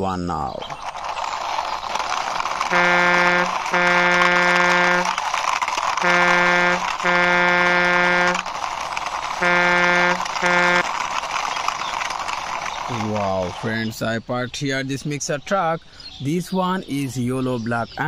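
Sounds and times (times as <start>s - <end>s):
truck horn blasts: 2.7s - 5.2s, 6.0s - 8.5s, 9.4s - 10.9s.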